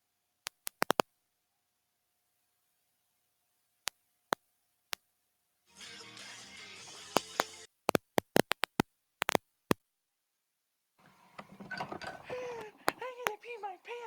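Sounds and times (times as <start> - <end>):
sharp clicks: 0.5 - 1.1, 11.4 - 13.4
faint noise: 11.0 - 14.0.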